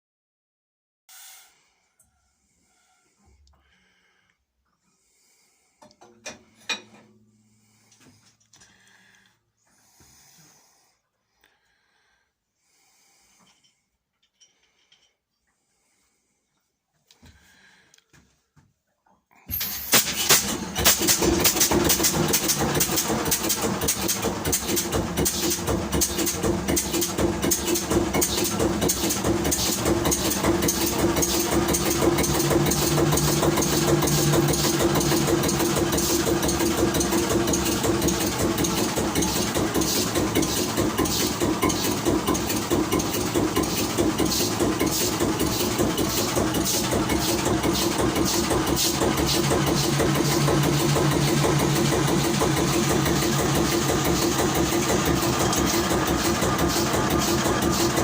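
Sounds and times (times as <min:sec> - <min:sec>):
marine diesel engine running: 0:19.6 - 0:58.0.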